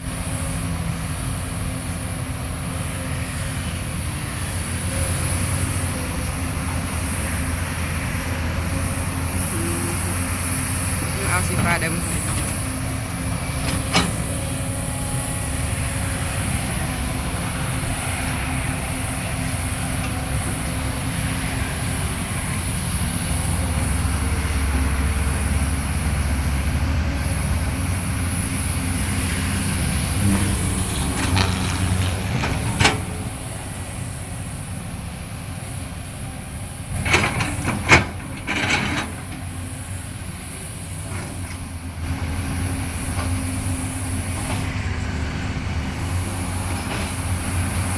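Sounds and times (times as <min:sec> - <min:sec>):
excavator diesel engine running: 0:00.0 - 0:47.9
metallic clanks and scrapes: 0:13.6 - 0:14.4, 0:30.3 - 0:33.3, 0:37.0 - 0:39.4.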